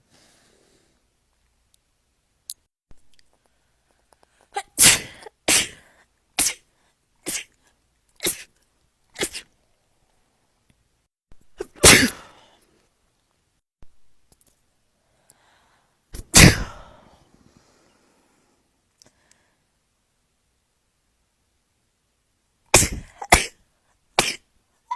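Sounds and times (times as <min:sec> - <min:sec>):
person sneezing: 0:04.5 - 0:08.5, 0:09.2 - 0:09.5, 0:11.6 - 0:12.6, 0:16.2 - 0:17.1, 0:22.7 - 0:23.6, 0:24.2 - 0:24.9.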